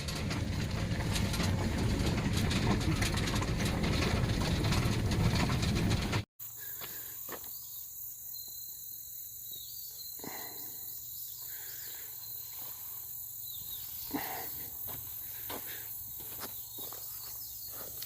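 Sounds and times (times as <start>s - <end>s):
insects chirring: 6.4s - 18.0s.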